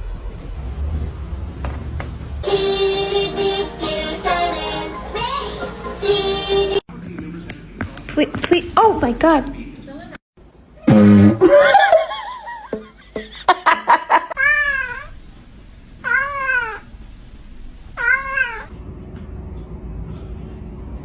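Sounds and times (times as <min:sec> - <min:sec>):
cat cries and squeals: 0:14.4 - 0:15.1, 0:16.0 - 0:16.9, 0:18.0 - 0:18.7
cat meowing: 0:14.4 - 0:15.1, 0:16.0 - 0:16.8, 0:18.0 - 0:18.7.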